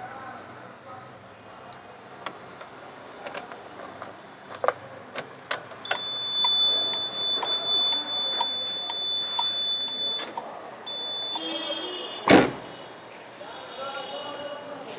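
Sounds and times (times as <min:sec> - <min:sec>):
alarm buzzer high tone: 0:05.9 - 0:10.3, 0:10.9 - 0:12.9.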